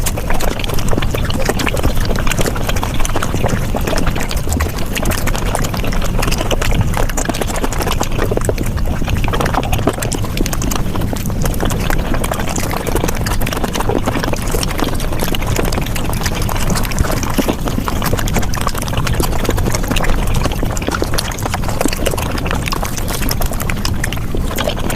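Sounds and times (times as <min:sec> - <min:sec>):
chewing and mouth sounds: 0:00.0 - 0:24.9.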